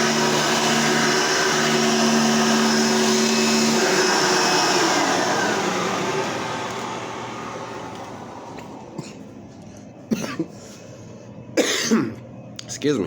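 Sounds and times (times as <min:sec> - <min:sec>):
vacuum cleaner motor whine: 0:00.0 - 0:09.7.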